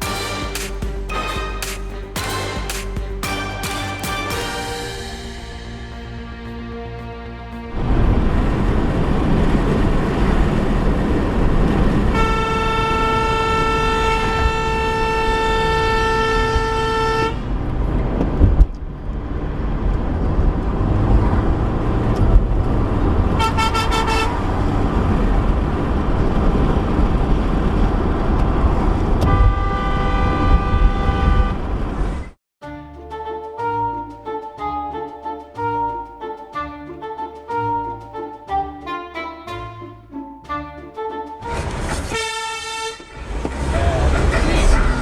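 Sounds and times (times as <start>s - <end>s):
car horn honking: 0.0s - 5.5s, 12.1s - 17.4s, 23.4s - 24.5s, 29.2s - 31.7s, 40.5s - 43.2s
road and engine noise: 4.5s - 32.4s, 41.4s - 45.0s.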